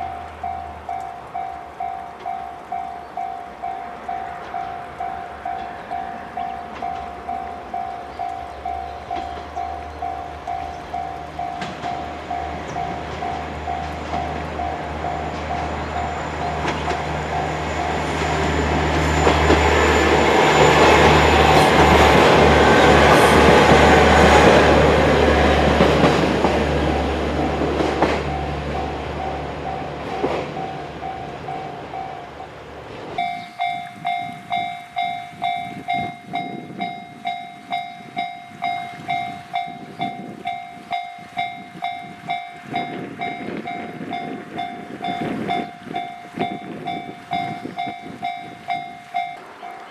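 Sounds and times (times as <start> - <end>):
crossing bell clanging: 0.0 - 32.5, 33.1 - 49.9
steam train passing: 0.0 - 49.9.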